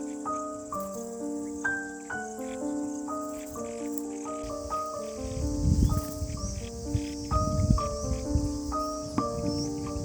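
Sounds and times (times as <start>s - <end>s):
slow melody of held notes: 0.0s - 10.0s
steady high hiss: 0.0s - 10.0s
low rumbling thumps: 5.4s - 10.0s.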